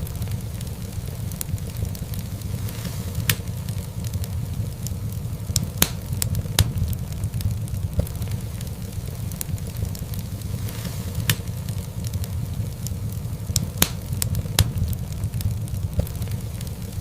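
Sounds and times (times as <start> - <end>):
fire crackling and popping: 0.0 - 17.0
fire flames rumbling: 0.0 - 17.0.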